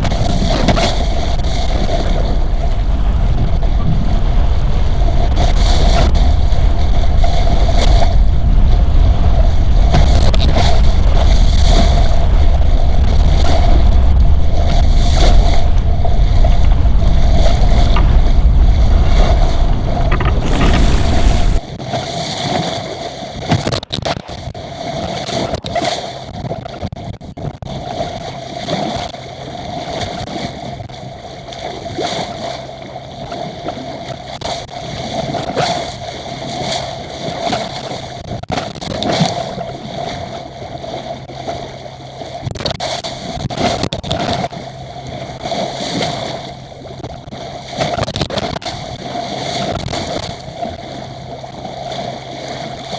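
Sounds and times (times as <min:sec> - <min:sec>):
wind buffeting microphone: 0:00.0 - 0:22.6
water splashing against hull: 0:00.0 - 0:52.9.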